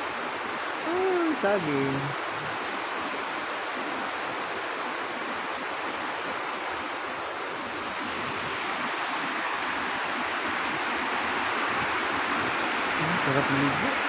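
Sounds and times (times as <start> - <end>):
river water rushing: 0.0 - 14.0.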